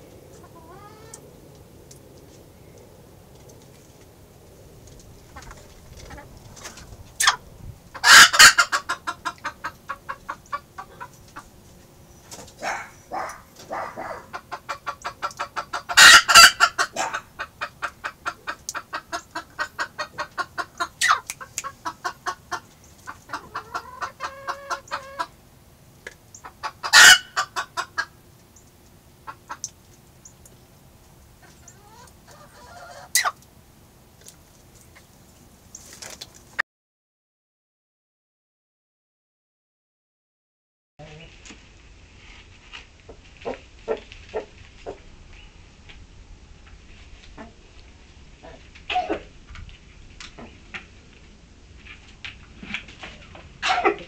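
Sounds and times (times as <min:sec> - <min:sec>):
hen clucking: 0:00.3 - 0:01.3, 0:05.1 - 0:25.4, 0:26.2 - 0:28.2, 0:29.2 - 0:30.5, 0:31.4 - 0:33.4, 0:43.4 - 0:45.0, 0:48.4 - 0:49.3, 0:53.6 - 0:54.0
hen squawking: 0:00.5 - 0:01.2, 0:08.0 - 0:11.2, 0:12.6 - 0:25.3, 0:31.4 - 0:33.4.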